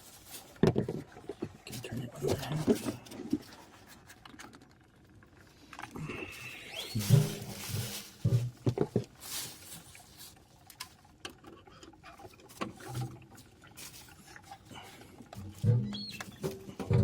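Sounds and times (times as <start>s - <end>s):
metal scraping and knocking: 15.4s - 17.0s.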